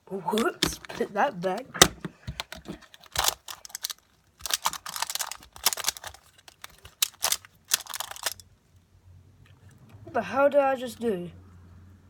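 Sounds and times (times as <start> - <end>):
puzzle cube pieces clicking: 0.3 - 8.4.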